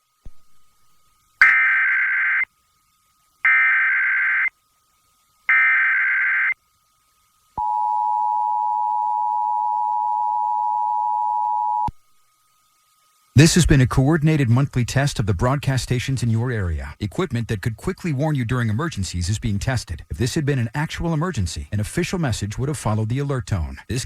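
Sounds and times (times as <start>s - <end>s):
warbling digital data tones: 1.4s - 2.5s, 5.5s - 6.6s.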